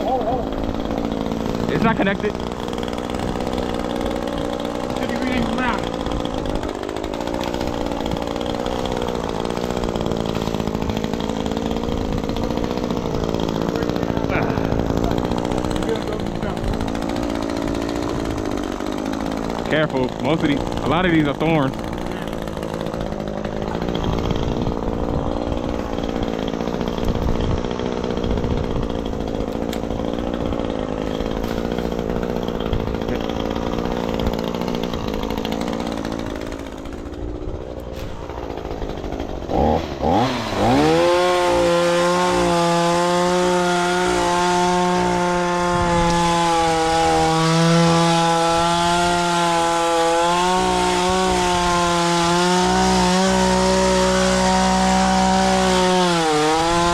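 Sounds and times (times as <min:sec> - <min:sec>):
chainsaw engine revving: 0:00.0 - 0:56.9.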